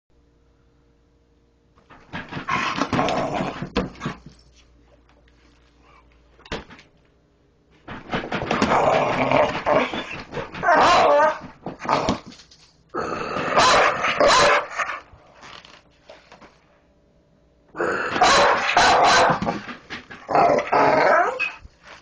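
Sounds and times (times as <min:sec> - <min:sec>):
dog barking and growling: 0:01.9 - 0:04.3, 0:07.9 - 0:12.4, 0:13.0 - 0:15.1, 0:17.8 - 0:21.6.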